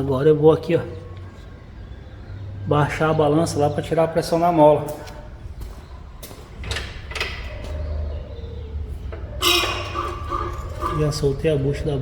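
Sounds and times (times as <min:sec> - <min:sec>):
suspension creaking squeal: 0:06.7 - 0:12.0.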